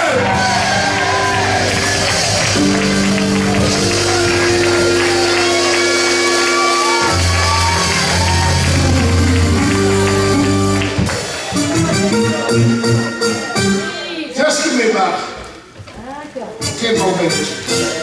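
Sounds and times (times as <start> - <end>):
organ chords: 0.0 - 14.0
congregation shouting and singing: 0.0 - 14.6.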